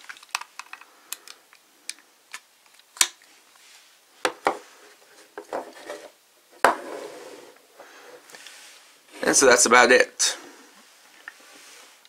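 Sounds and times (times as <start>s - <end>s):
plastic toy parts clicking: 0.0s - 3.2s.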